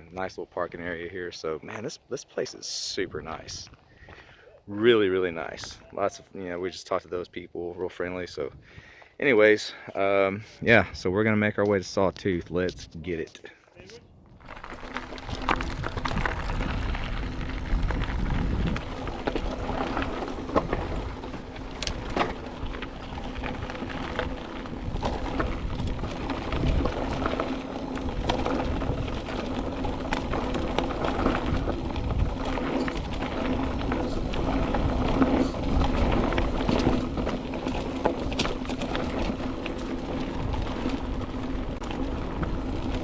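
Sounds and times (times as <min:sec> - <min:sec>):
bike tyres rolling: 0:13.8 - 0:43.0
wind rumbling on microphone: 0:14.0 - 0:43.0.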